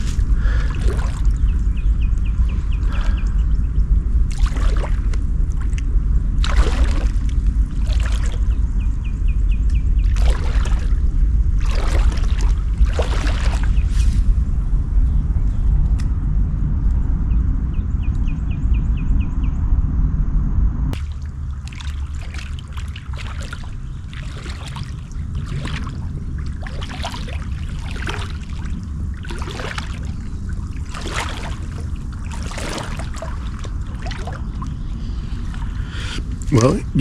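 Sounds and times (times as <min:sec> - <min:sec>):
creek water trickling and splashing: 0:00.0 - 0:01.8, 0:04.3 - 0:05.8, 0:06.4 - 0:08.6, 0:10.0 - 0:14.2, 0:21.0 - 0:37.0
low rumble: 0:00.0 - 0:37.0.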